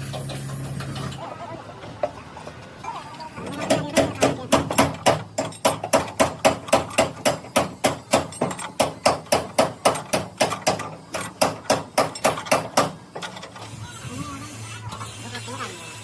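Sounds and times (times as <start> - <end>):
hammer striking metal: 3.4 - 13.0.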